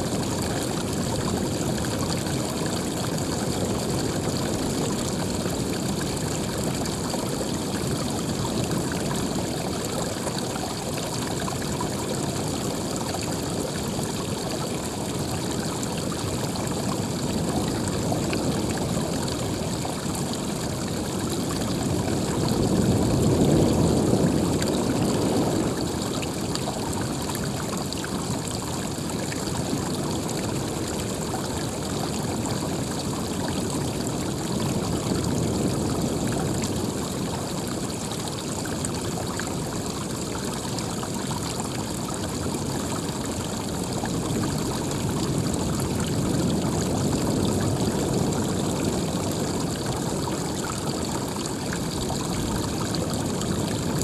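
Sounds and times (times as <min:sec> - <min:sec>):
running water rushing: 0:00.0 - 0:54.0.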